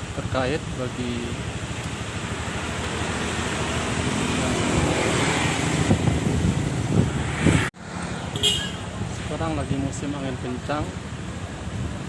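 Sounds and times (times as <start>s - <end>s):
road traffic rushing: 0.0s - 12.0s
wind on microphone: 4.5s - 7.8s.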